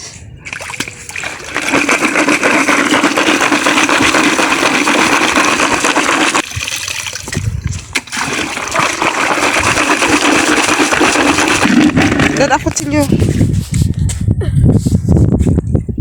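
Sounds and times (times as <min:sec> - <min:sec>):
water running and splashing: 0:00.6 - 0:12.6.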